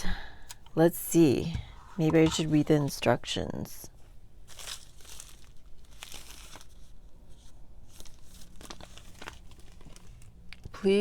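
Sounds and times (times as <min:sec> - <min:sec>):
paper leaflet rustling: 0:04.5 - 0:10.4.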